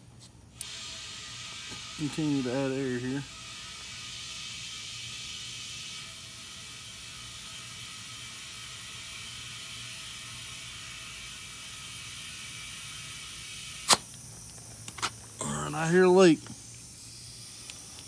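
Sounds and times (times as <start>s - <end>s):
air hissing into tire: 0.5s - 18.0s
sharp click: 13.8s - 14.2s.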